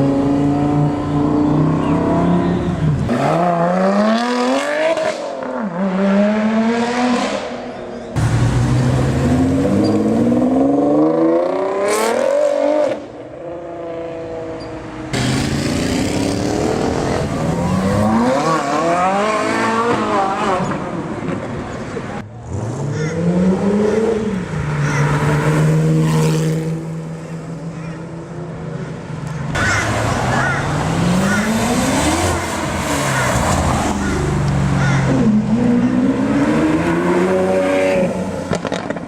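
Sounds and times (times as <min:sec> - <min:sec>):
car engines revving: 0:00.0 - 0:39.0.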